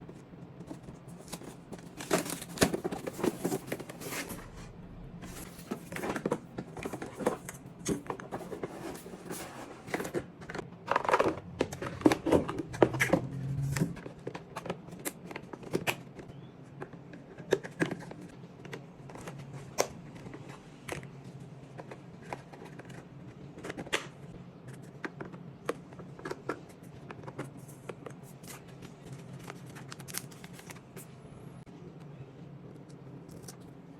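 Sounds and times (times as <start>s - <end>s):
plastic packaging rustling and clicking: 0.6s - 4.4s, 21.7s - 31.0s.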